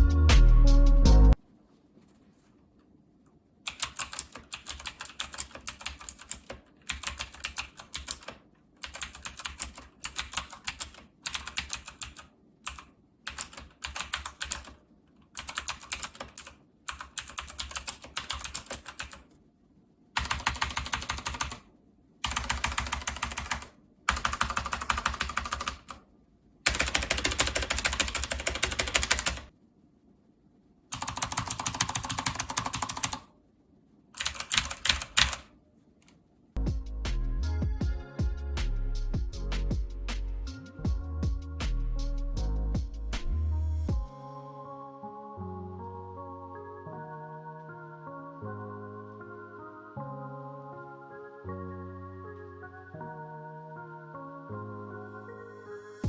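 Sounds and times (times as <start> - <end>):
mechanical keyboard typing: 3.6 - 19.4, 20.2 - 26.0, 26.7 - 29.5, 30.9 - 33.3, 34.2 - 35.5.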